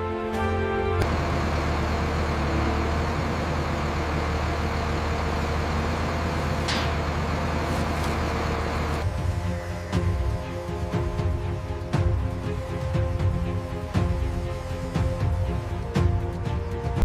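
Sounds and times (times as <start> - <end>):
music: 0.0 - 1.1, 9.0 - 17.0
heavy vehicle engine running: 0.0 - 17.0
broad noisy hiss: 1.0 - 16.9.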